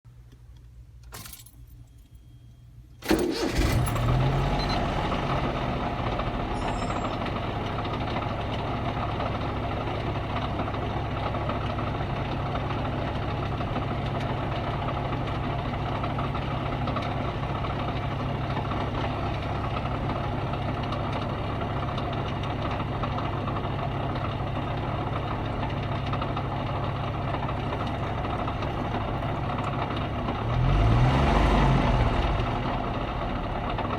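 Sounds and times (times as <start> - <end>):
engine starting and idling: 3.0 - 11.4, 25.4 - 33.9.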